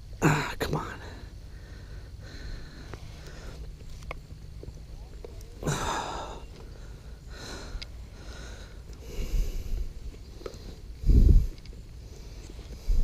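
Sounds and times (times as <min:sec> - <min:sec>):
person breathing hard: 0:01.0 - 0:03.8, 0:05.6 - 0:11.6.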